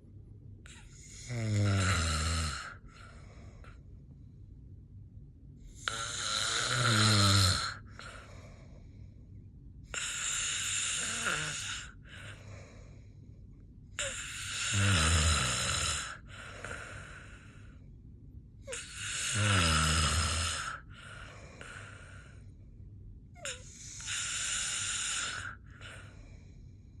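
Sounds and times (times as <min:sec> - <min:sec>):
person snoring: 0:00.7 - 0:03.8, 0:05.7 - 0:08.6, 0:09.9 - 0:12.9, 0:14.0 - 0:17.6, 0:18.7 - 0:22.4, 0:23.4 - 0:26.4.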